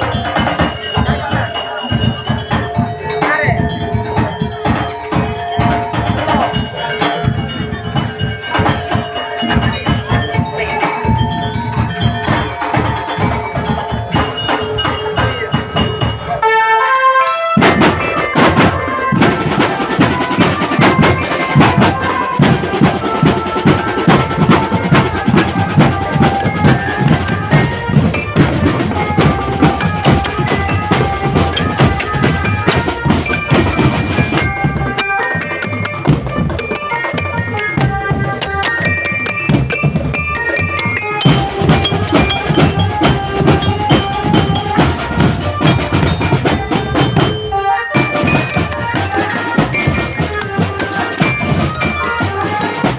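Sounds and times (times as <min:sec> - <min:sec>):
glockenspiel melody: 0:00.0 - 0:52.9
marching drums: 0:00.0 - 0:52.9.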